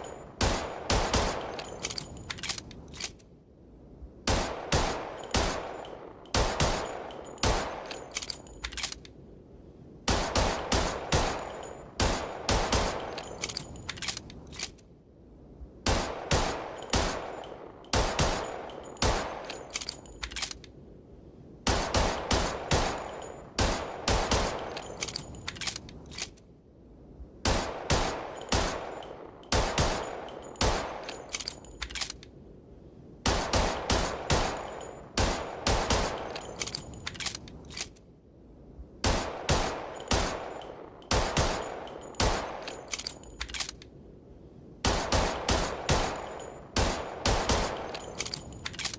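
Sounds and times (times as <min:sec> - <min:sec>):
pistol shots echoing: 0:00.4 - 0:01.9, 0:04.3 - 0:08.1, 0:10.1 - 0:13.3, 0:15.9 - 0:19.7, 0:21.7 - 0:25.1, 0:27.5 - 0:31.3, 0:33.3 - 0:36.7, 0:39.0 - 0:42.9, 0:44.8 - 0:48.4.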